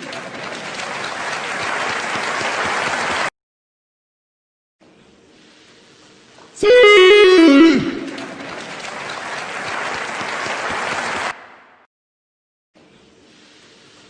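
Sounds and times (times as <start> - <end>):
crowd cheering and applause: 0.0 - 3.3, 6.6 - 11.8
comic descending tone: 6.6 - 8.6.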